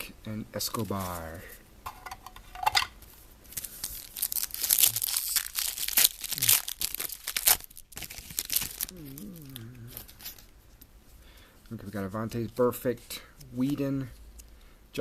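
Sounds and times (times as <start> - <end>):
wrapper tearing and crinkling: 3.5 - 10.5.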